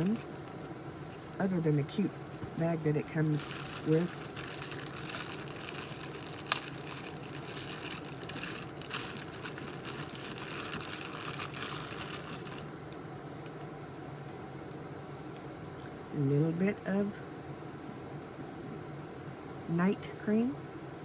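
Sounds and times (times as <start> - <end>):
packaging rustling: 0.0 - 13.0
low room hum: 0.0 - 21.0.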